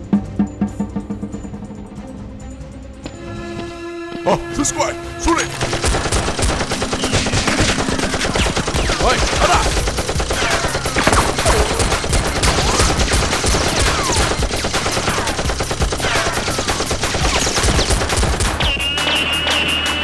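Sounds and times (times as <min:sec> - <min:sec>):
automatic gunfire sound effects: 0:04.6 - 0:18.7
short falling whistles: 0:18.6 - 0:20.0.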